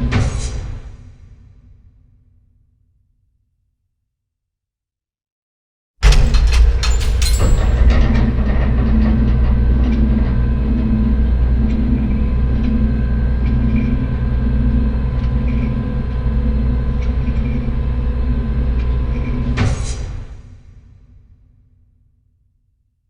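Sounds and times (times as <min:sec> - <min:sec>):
vault door mechanism rumbling: 0:06.0 - 0:20.2.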